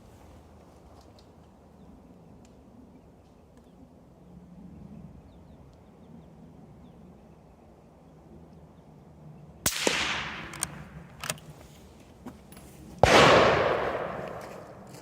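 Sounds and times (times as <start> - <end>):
suppressed rifle shots: 9.7 - 11.4, 13.0 - 15.0
rumble after shot: 13.0 - 15.0.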